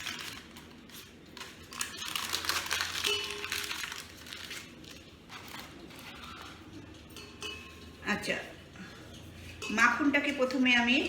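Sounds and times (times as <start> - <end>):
wrapper crinkling and rustling: 0.0 - 7.0.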